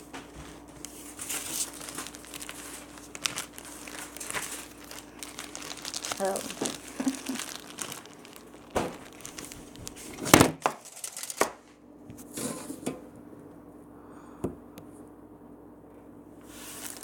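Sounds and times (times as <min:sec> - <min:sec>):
rustling and tearing: 0:00.5 - 0:11.6, 0:16.5 - 0:17.0.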